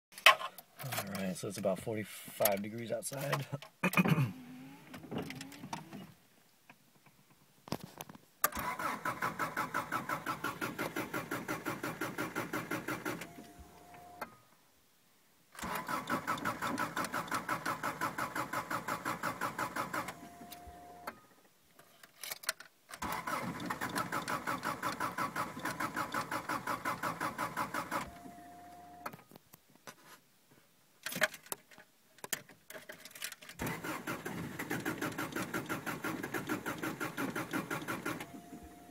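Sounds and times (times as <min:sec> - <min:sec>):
car engine cranking on starter: 0:04.3 - 0:06.1, 0:08.4 - 0:14.3, 0:15.6 - 0:21.2, 0:22.9 - 0:29.1, 0:33.6 - 0:38.9.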